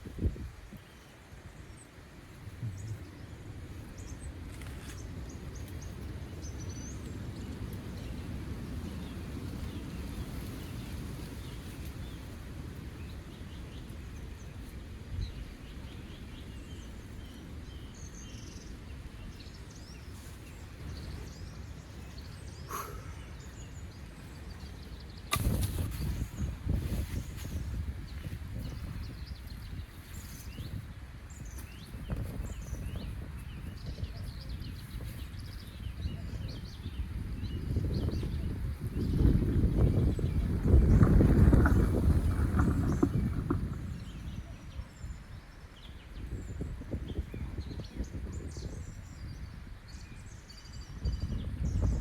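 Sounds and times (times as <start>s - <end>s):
low wind noise: 0.0s - 52.0s
faint bird chirps: 21.9s - 24.1s.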